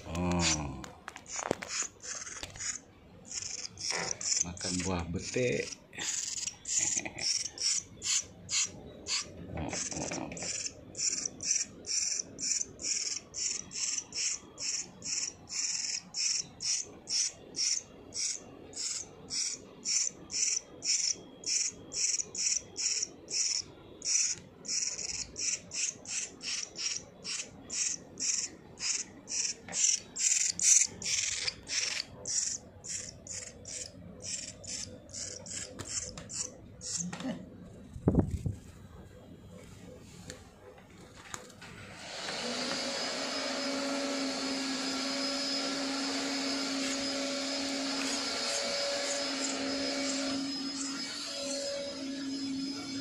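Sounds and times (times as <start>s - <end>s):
nestling rasping begging calls: 1.3s - 37.1s, 45.4s - 51.0s.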